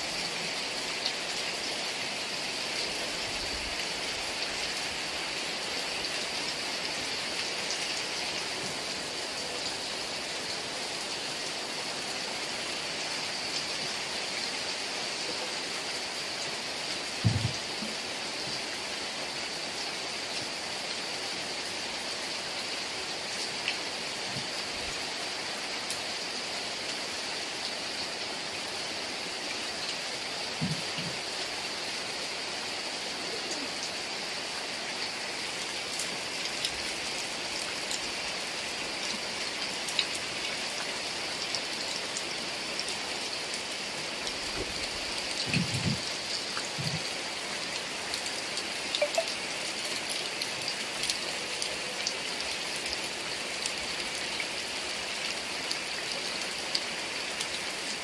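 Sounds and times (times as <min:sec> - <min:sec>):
heavy rain hissing: 0:00.0 - 0:58.0
short low thuds: 0:17.2 - 0:17.6.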